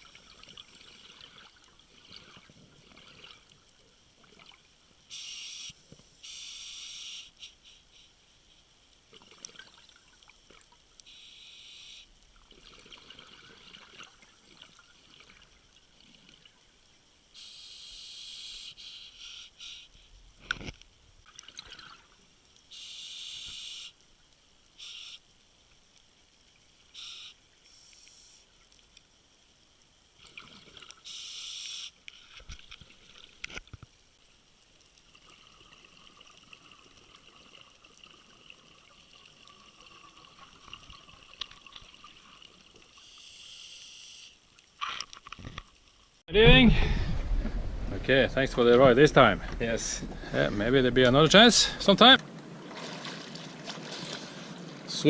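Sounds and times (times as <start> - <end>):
water splashing and trickling: 0.0 - 5.1, 7.8 - 11.2, 12.2 - 17.2, 20.0 - 22.7, 28.5 - 31.1, 32.0 - 43.1, 44.4 - 55.0
hissy splashing bursts: 5.1 - 8.2, 11.0 - 12.2, 17.3 - 20.1, 22.7 - 24.0, 24.8 - 25.3, 26.9 - 28.4, 31.0 - 32.0, 42.9 - 44.6.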